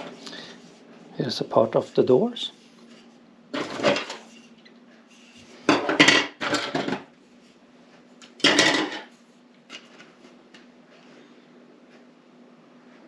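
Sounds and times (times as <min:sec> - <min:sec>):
faint steady hum: 0:00.0 - 0:13.0
plastic parts clattering on table: 0:03.6 - 0:04.3.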